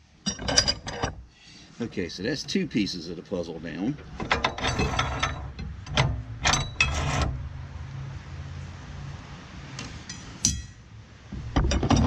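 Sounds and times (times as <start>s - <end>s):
steel pieces clanking: 0.2s - 1.2s, 4.0s - 7.4s, 9.8s - 10.8s.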